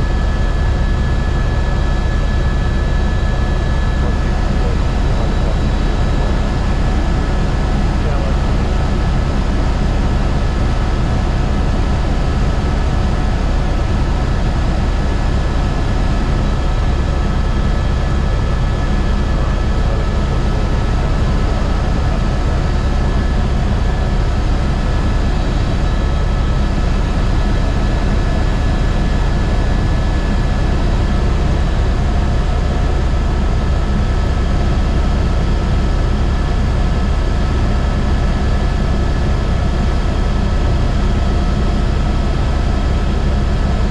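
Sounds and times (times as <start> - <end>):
helicopter rotor beat: 0.0 - 43.9
turbine engine whine: 0.0 - 43.9.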